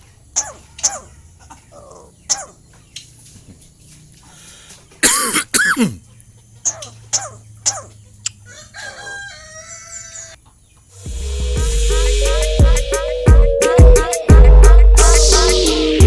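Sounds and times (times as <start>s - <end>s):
starling harsh raspy calls: 6.6s - 8.0s
loud music with a beat: 11.1s - 16.0s.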